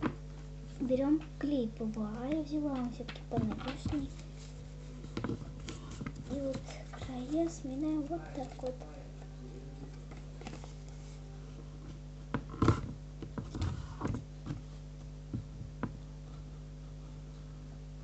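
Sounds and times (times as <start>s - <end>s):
steady low hum: 0.0s - 18.0s
paper knocks and rustles: 2.2s - 8.8s, 11.9s - 16.0s.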